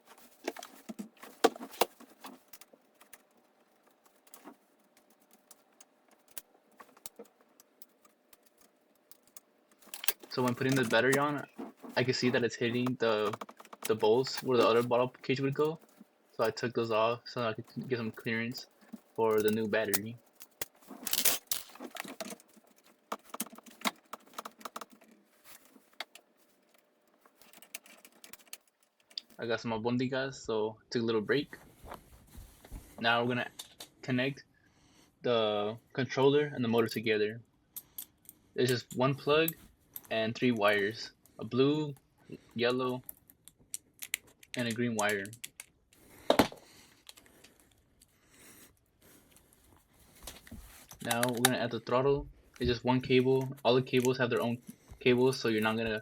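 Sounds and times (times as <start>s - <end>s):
small metal parts clinking: 0.7s - 29.2s.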